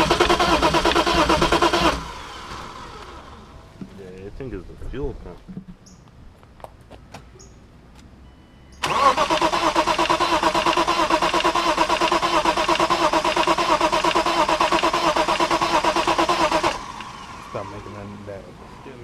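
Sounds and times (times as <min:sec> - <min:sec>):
car starter cranking engine: 0:00.0 - 0:03.5, 0:08.8 - 0:18.0.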